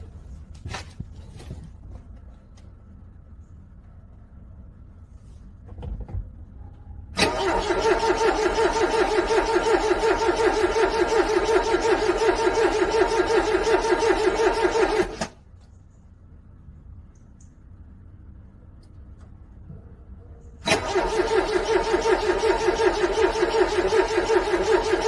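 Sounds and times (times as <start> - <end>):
car starter motor cranking: 7.2 - 15.4, 20.6 - 25.0.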